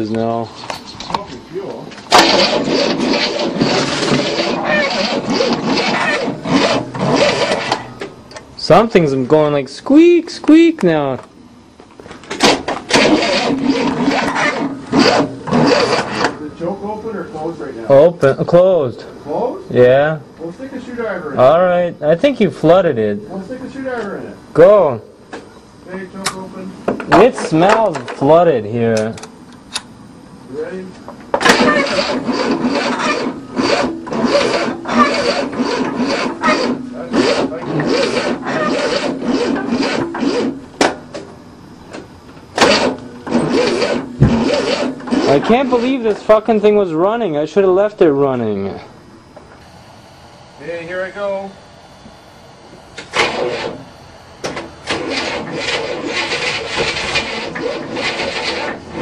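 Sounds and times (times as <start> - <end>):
starter motor cranking engine: 1.0 - 8.1, 12.2 - 16.5, 31.3 - 41.3, 41.9 - 46.9, 52.8 - 59.0
starter engaging clunk: 12.0 - 16.4, 40.8 - 45.1, 54.4 - 57.5.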